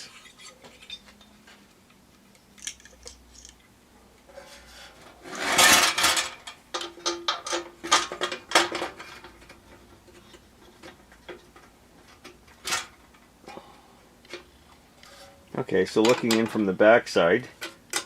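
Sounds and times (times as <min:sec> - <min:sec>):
rattling metal scrape: 0:04.3 - 0:09.5, 0:15.0 - 0:15.5.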